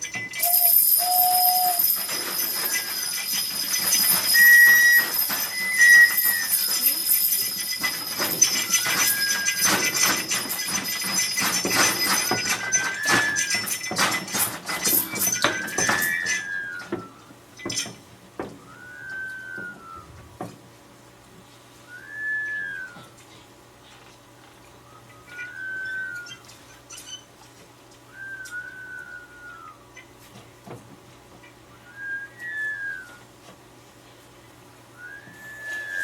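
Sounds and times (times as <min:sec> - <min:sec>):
high steady ringing: 0:00.0 - 0:18.0
objects clattering and rattling: 0:00.0 - 0:18.6
short whistle blasts: 0:00.4 - 0:02.0, 0:31.9 - 0:33.2, 0:35.0 - 0:36.0.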